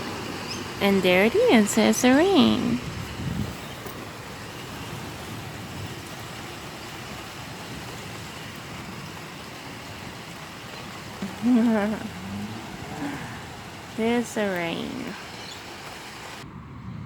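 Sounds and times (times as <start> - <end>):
rain shower hissing: 0.0 - 16.4
person speaking: 0.8 - 2.8, 14.0 - 15.2.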